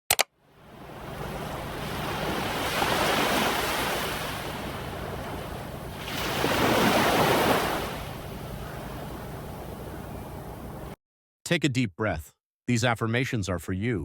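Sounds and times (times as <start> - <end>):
ocean waves washing in: 0.4 - 11.0.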